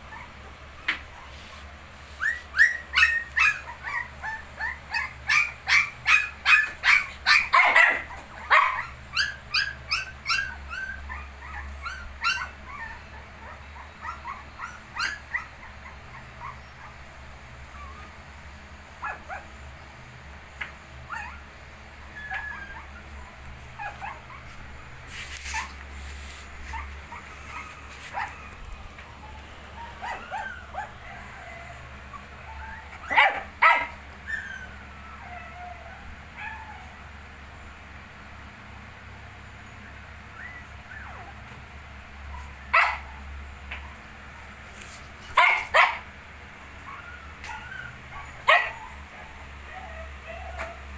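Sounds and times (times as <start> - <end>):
puppies whimpering and squeaking: 0.0 - 38.8, 39.4 - 50.9
puppy yelps: 0.1 - 1.5, 2.2 - 17.1, 19.0 - 19.6, 21.1 - 24.6, 26.7 - 37.0, 39.8 - 41.6, 42.3 - 44.5, 45.3 - 46.1, 46.8 - 50.9.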